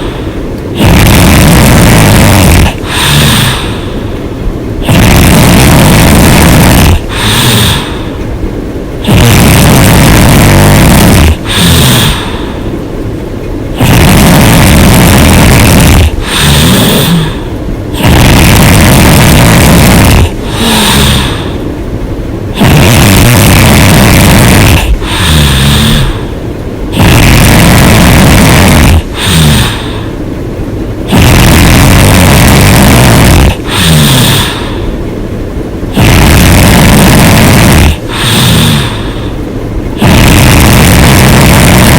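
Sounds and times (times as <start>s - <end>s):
woman snoring: 0.0s - 4.0s, 4.8s - 8.2s, 9.0s - 12.7s, 13.7s - 21.6s, 22.5s - 30.2s, 31.0s - 35.0s, 35.9s - 39.4s, 40.0s - 41.9s
wavering breath out: 2.5s - 4.2s, 4.8s - 8.3s, 20.0s - 21.7s, 24.3s - 30.2s, 33.3s - 35.0s, 37.7s - 40.9s.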